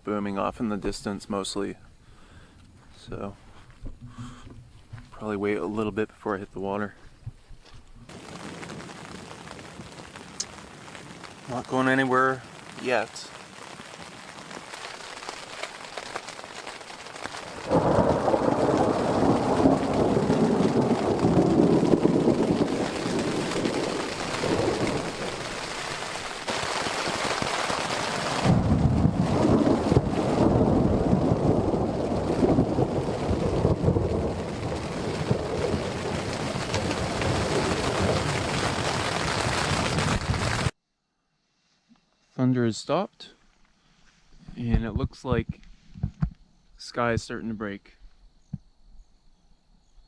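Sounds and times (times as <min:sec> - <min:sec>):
light rain with drips: 0:07.8 - 0:40.8
distant thunder rumbling: 0:16.7 - 0:40.7.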